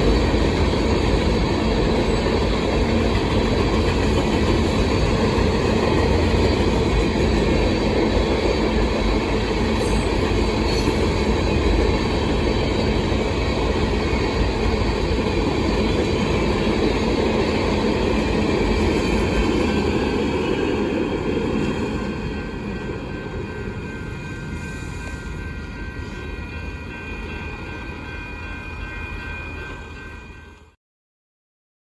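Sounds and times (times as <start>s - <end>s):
freight train wheels rumbling: 0.0s - 30.8s.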